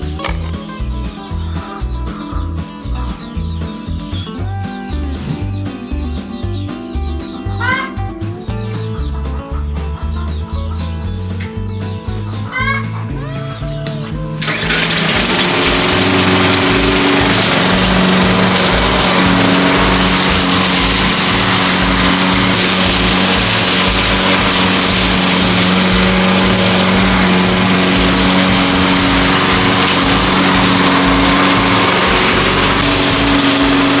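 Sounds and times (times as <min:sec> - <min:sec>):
small petrol engine running: 0:00.0 - 0:34.0.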